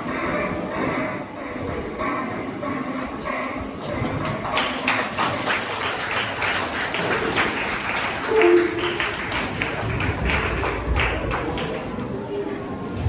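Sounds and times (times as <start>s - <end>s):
audience clapping: 4.1s - 12.1s.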